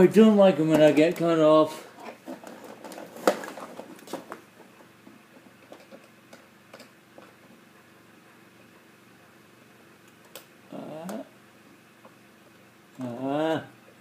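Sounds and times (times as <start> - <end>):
objects being handled clicking: 5.4 - 7.4.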